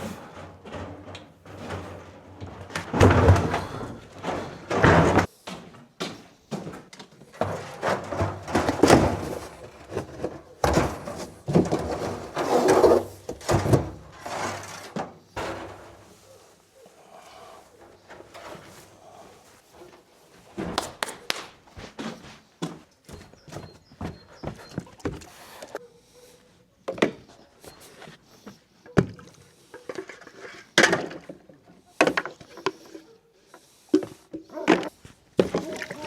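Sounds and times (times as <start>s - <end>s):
objects knocking and scraping: 0.0s - 16.6s, 17.3s - 22.2s, 28.9s - 36.0s.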